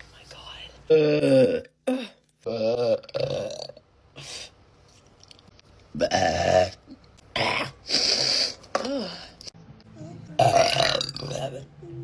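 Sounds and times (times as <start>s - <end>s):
woman burping: 0.9s - 3.8s, 6.0s - 7.9s, 10.4s - 11.5s.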